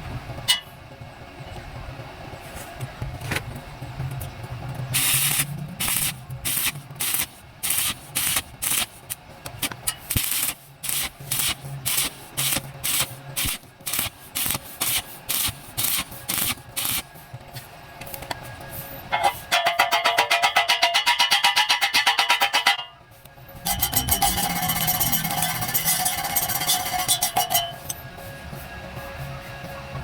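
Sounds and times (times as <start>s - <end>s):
steady low hum: 0.0s - 30.0s
welding arc crackling: 4.9s - 17.2s, 23.6s - 28.0s.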